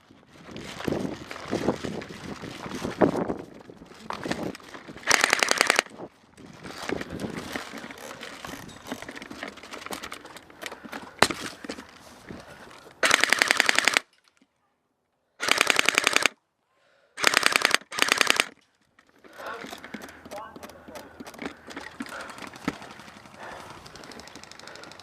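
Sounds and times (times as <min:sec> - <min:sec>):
rustling handling noise: 0:00.0 - 0:13.1, 0:18.2 - 0:25.0
airsoft rifle full-auto bursts: 0:05.0 - 0:05.9, 0:13.0 - 0:14.1, 0:15.4 - 0:16.4, 0:17.2 - 0:18.6.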